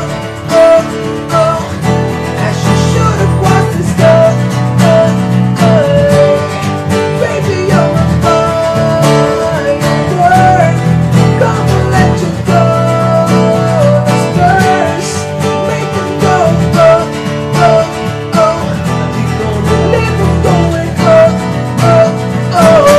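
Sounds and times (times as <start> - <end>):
guitar-led instrumental music: 0.0 - 22.9.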